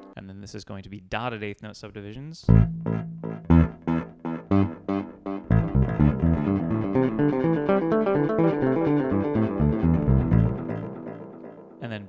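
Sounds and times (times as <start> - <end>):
electric bass plucked notes with echo: 2.5 - 11.8.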